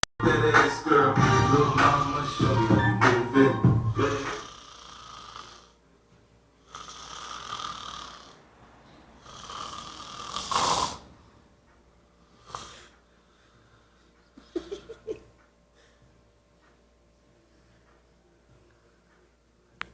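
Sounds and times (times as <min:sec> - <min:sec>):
person snoring: 0:04.0 - 0:05.8, 0:06.7 - 0:08.4, 0:09.2 - 0:11.1.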